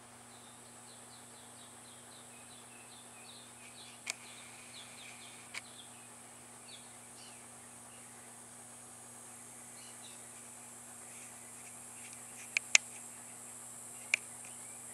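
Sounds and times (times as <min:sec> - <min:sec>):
steady hum and hiss: 0:00.0 - 0:14.9
faint bird chirps: 0:00.2 - 0:08.4, 0:09.3 - 0:14.9
sharp clicks: 0:04.0 - 0:04.3, 0:11.6 - 0:13.0, 0:14.0 - 0:14.6.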